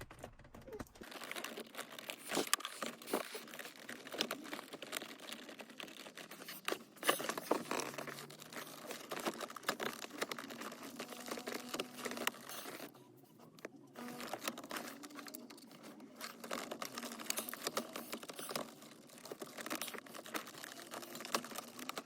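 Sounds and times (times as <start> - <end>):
plastic parts crinkling and clicking: 0.0 - 22.0.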